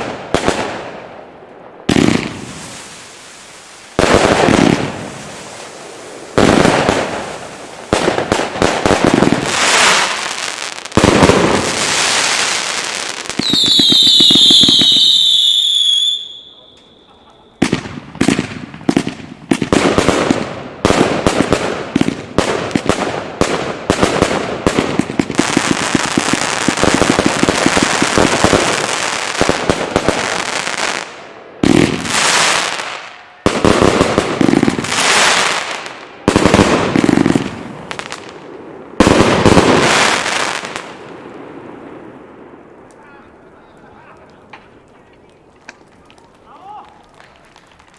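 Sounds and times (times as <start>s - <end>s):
firework launches and bursts: 1.8s - 16.3s
firework whistles: 11.8s - 17.6s.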